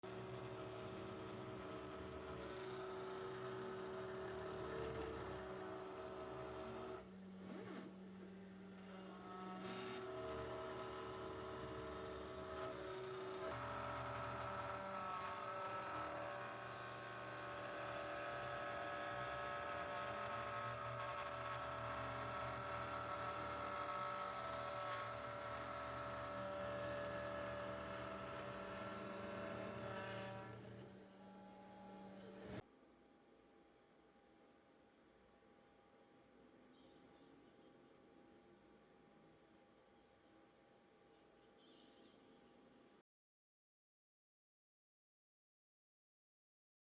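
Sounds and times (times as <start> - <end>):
engraving machine motors humming: 0.1 - 32.6.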